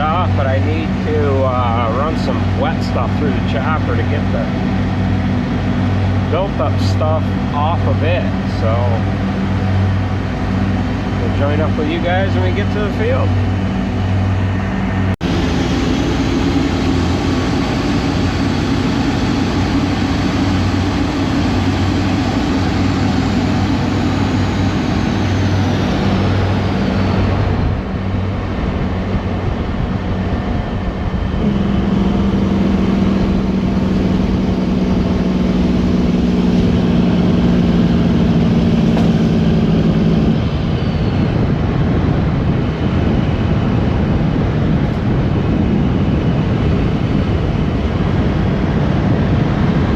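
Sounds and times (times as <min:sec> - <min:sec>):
vehicle engine driving: 0:00.0 - 0:49.9.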